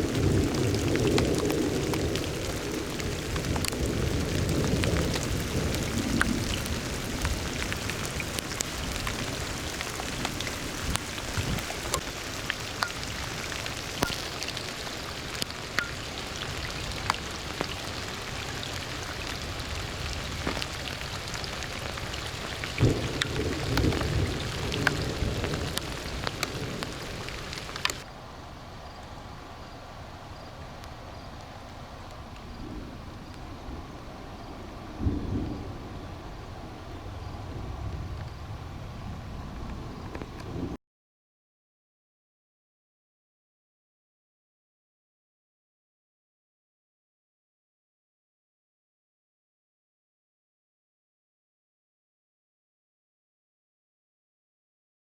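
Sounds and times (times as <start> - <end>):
low thunder rumbles: 0.0 - 15.7, 16.4 - 28.1, 32.2 - 40.8
raindrops ticking on hard surface: 0.0 - 28.1
heavy rain: 0.0 - 40.8.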